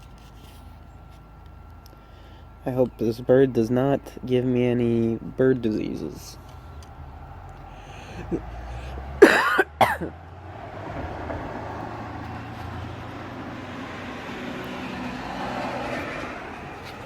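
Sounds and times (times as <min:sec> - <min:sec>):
road traffic hum: 0:00.0 - 0:17.0
person coughing: 0:09.2 - 0:10.1.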